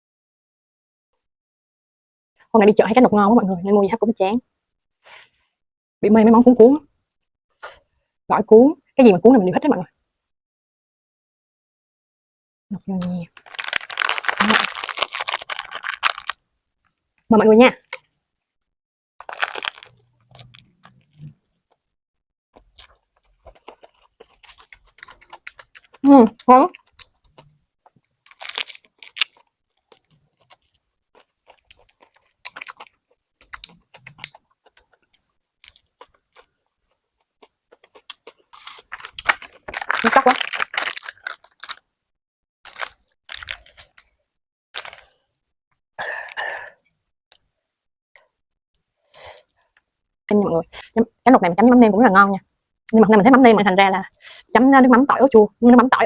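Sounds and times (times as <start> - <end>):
crisp bite into food: 13.4 - 16.4, 19.2 - 21.3, 22.6 - 41.8, 42.7 - 44.0, 44.8 - 45.1
chewing with wet mouth clicks: 22.6 - 28.2, 29.0 - 39.3.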